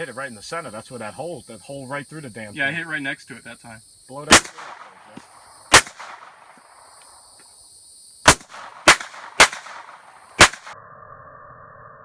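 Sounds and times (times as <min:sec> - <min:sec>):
gunshots with echo: 0:04.3 - 0:06.6, 0:08.3 - 0:10.8.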